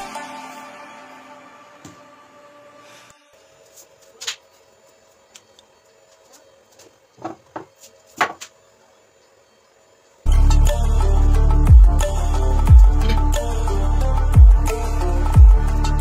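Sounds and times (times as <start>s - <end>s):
loud background music: 0.0s - 3.1s, 10.3s - 16.0s.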